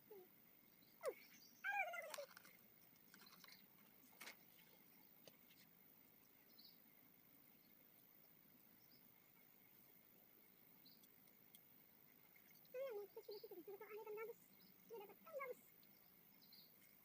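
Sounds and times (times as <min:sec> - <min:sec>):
faint ticks: 0:10.8 - 0:12.7.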